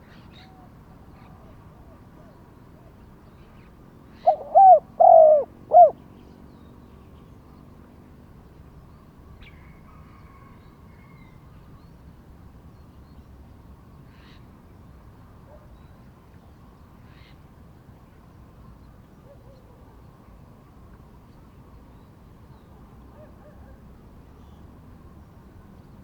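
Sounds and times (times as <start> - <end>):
dove cooing: 4.2 - 6.0.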